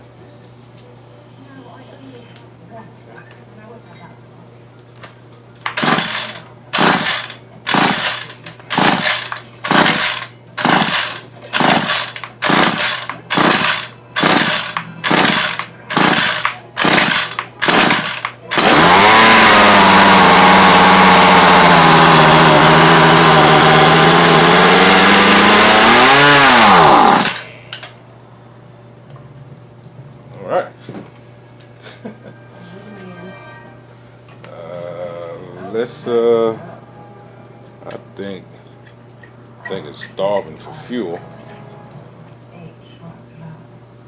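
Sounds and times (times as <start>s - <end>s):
string trimmer engine running: 5.8s - 27.6s
starter cord pulls: 26.2s - 27.4s.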